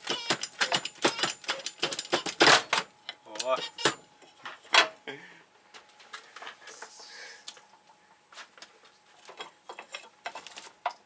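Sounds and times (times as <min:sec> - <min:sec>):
metallic clicks and knocks of tools: 0:00.0 - 0:04.0.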